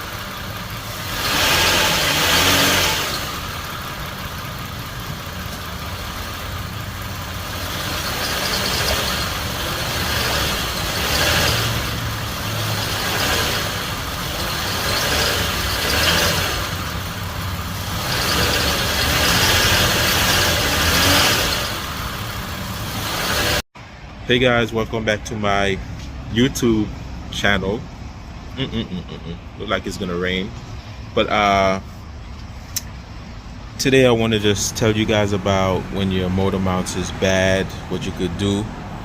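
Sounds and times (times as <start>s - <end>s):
car engine idling: 0.0s - 39.0s.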